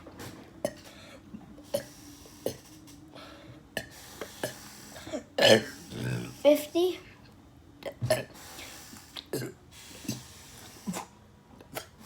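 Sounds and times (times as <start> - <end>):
person burping: 5.4 - 6.3.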